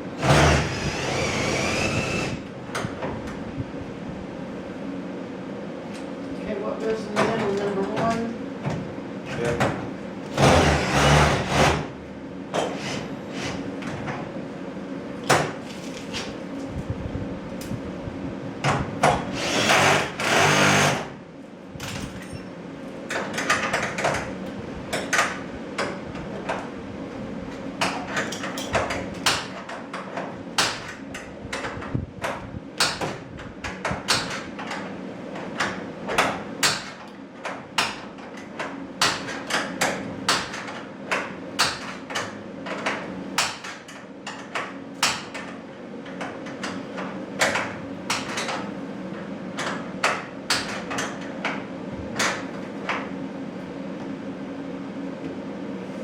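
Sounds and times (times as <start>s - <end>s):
power driver running: 0.0s - 2.5s, 10.2s - 12.0s, 19.2s - 21.2s
steady low hum: 0.0s - 56.0s.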